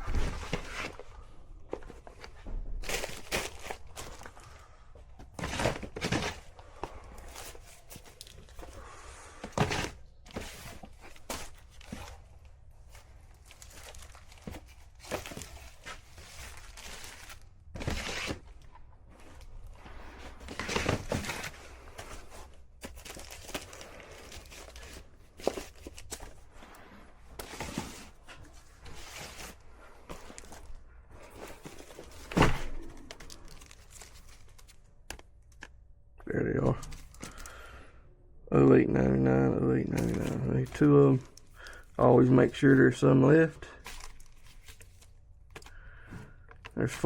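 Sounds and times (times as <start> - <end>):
packaging crinkling and rustling: 7.2 - 8.8, 9.7 - 18.7, 20.4 - 26.6, 27.3 - 35.7, 43.8 - 45.8.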